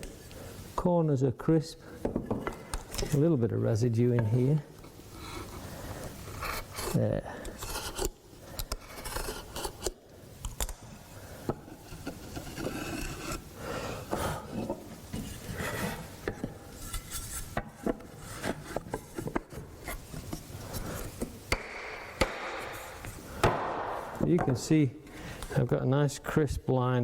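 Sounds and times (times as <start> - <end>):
hand tools scraping wood: 5.1 - 10.0, 11.7 - 13.4, 14.0 - 21.3.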